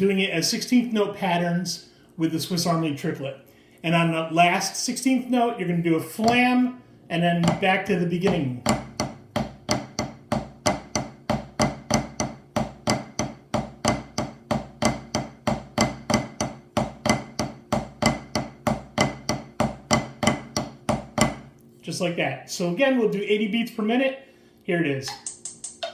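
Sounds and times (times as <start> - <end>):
drumsticks playing triplets: 6.1 - 6.6, 7.3 - 21.6, 25.0 - 25.9.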